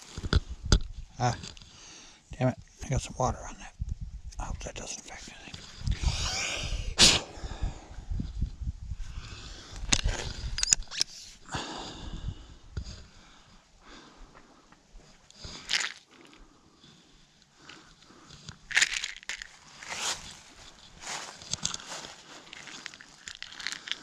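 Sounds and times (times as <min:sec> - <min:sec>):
rustling crunching handling noise: 0:15.5 - 0:16.4, 0:18.5 - 0:24.0.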